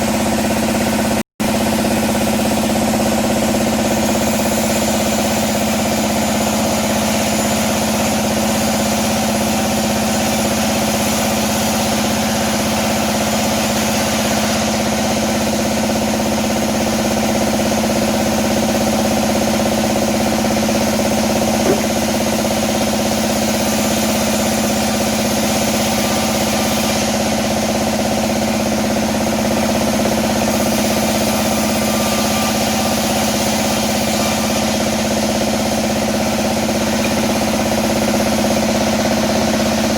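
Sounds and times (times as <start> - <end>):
bandsaw running: 0.0 - 39.9
short knock: 21.6 - 22.1.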